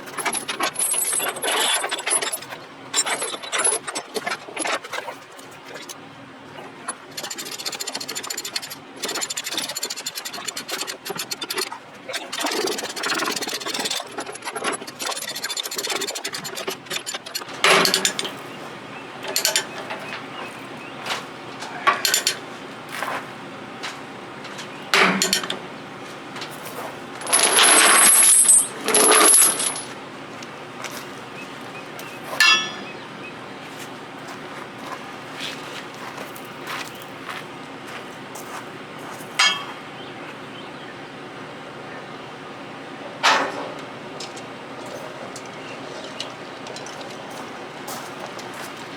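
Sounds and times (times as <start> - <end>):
steel chains clinking and rattling: 0.1 - 2.4, 26.5 - 30.0, 32.4 - 33.0.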